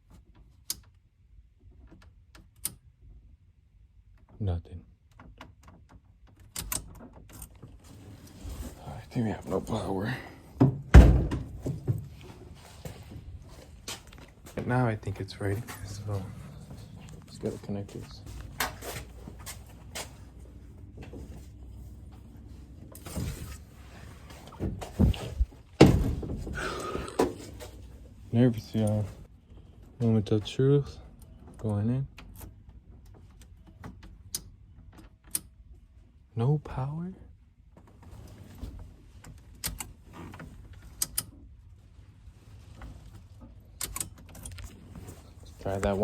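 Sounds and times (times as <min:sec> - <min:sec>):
light clicks and clunks: 0:04.0 - 0:08.4, 0:09.3 - 0:23.4, 0:42.6 - 0:46.0
dull thumps: 0:24.6 - 0:27.6.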